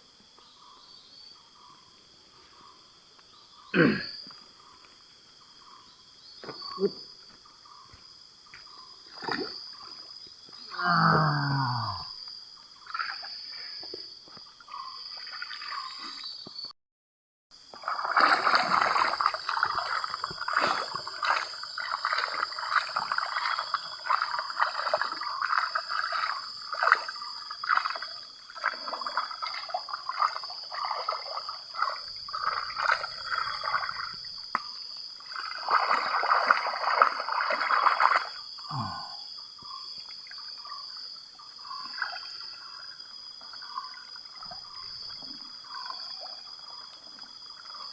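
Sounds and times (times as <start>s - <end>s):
water sloshing and trickling: 8.4s - 10.6s, 12.6s - 16.5s, 17.6s - 38.6s, 40.0s - 47.9s.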